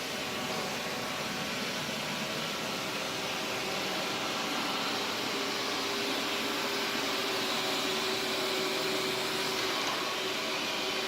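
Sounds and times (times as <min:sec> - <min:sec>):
robot vacuum whirring: 0:02.3 - 0:11.0.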